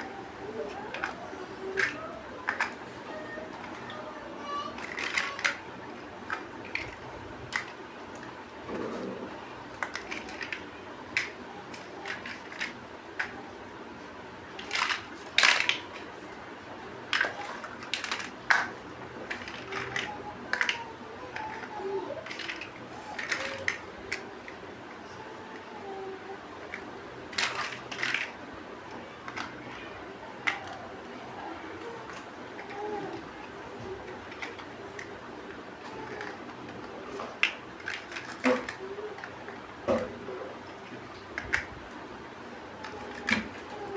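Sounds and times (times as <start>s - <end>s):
plastic bricks clicking together: 14.6s - 16.0s, 17.1s - 24.2s, 26.7s - 28.4s, 37.4s - 39.4s, 42.8s - 43.9s.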